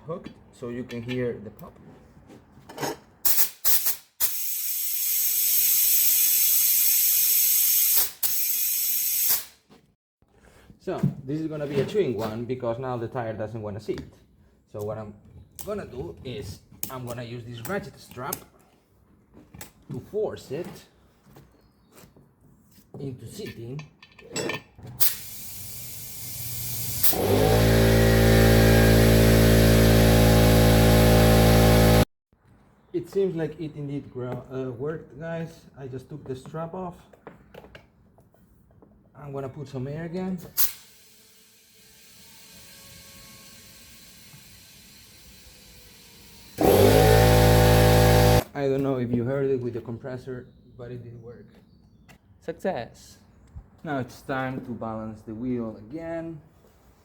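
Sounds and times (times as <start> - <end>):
compressed air hissing into tyre: 3.3 - 9.5, 25.0 - 27.2
air escaping from tyre: 25.0 - 27.4
air compressor motor humming: 25.1 - 32.1, 42.4 - 48.4.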